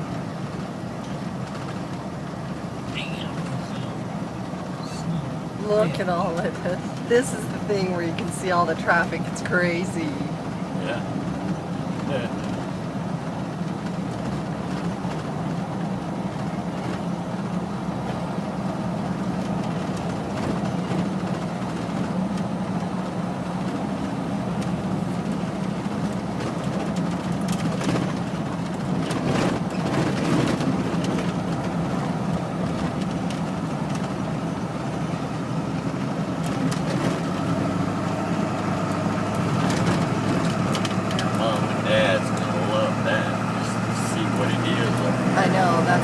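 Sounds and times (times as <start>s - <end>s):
car engine and road noise: 0.0s - 46.0s
knocks and rattles from bumps: 25.3s - 34.2s, 39.4s - 41.4s.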